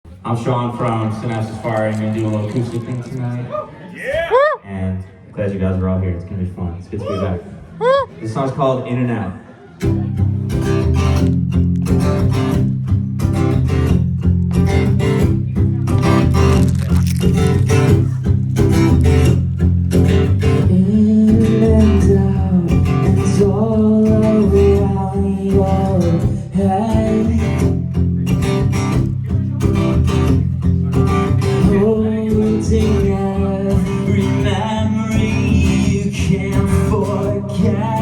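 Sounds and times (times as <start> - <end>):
acoustic guitar strummed and picked: 9.8 - 38.0.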